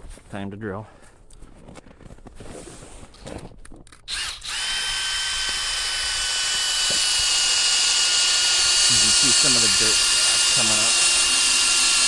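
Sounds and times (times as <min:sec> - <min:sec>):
soft handling noises: 0:00.0 - 0:04.0
power drill whining: 0:04.1 - 0:12.0.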